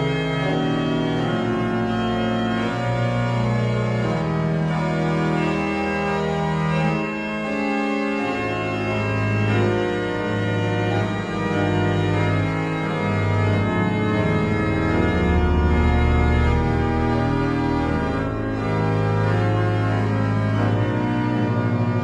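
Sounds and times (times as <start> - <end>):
organ music with held chords: 0.0 - 22.0.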